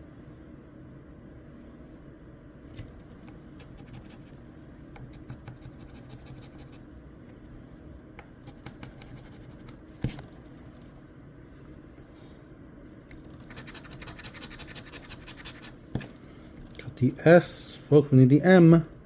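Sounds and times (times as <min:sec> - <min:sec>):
scratch-off ticket being scratched: 0:03.6 - 0:04.4, 0:05.0 - 0:06.8, 0:08.5 - 0:09.8, 0:13.3 - 0:15.8.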